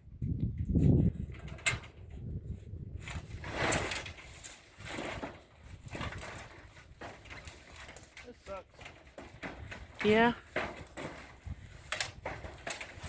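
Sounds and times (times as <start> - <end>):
tin roofing sheets scraping: 3.0 - 13.0.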